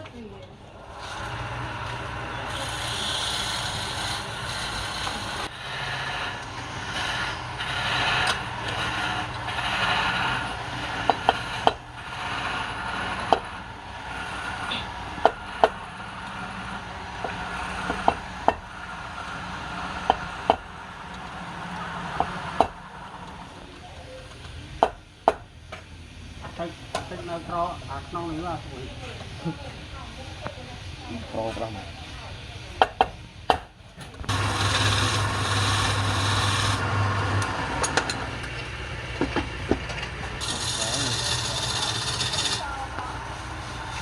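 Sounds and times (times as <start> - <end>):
lathe motor hum: 0.7 - 23.7, 34.3 - 44.0
tool cutting wood hiss: 0.8 - 20.6, 34.3 - 36.8, 40.4 - 44.0.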